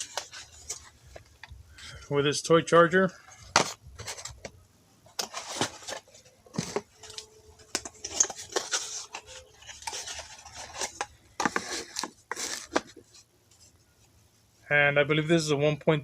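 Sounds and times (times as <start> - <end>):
packaging rustling and clattering: 0.0 - 1.9, 3.2 - 13.3.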